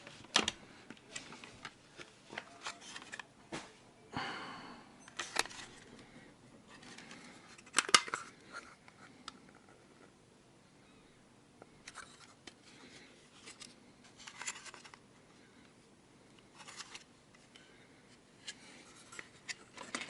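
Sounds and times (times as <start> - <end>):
plastic housing clicks and scrapes: 6.7 - 9.7.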